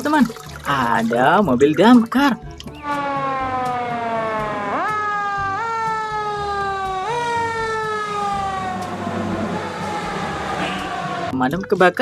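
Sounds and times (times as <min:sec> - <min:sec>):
electronic siren wailing: 0:02.6 - 0:11.5.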